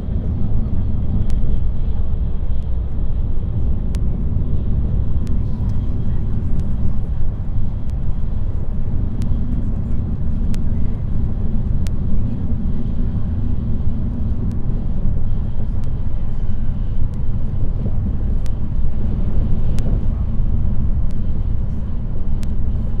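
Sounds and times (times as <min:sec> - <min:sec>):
train rumbling at speed: 0:00.0 - 0:23.0
faint clicks: 0:01.0 - 0:03.2, 0:05.2 - 0:12.9, 0:17.0 - 0:22.7.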